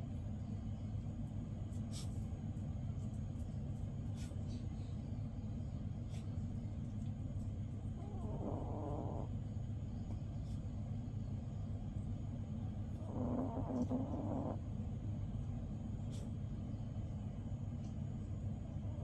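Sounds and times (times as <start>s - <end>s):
dog snoring: 8.0s - 9.3s, 12.9s - 14.6s.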